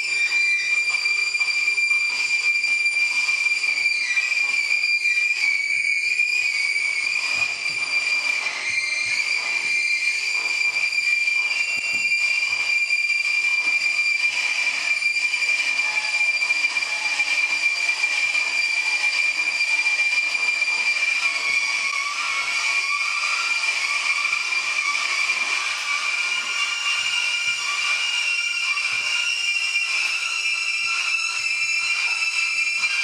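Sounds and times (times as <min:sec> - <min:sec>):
bowed daxophone squealing tone: 0:20.5 - 0:33.0.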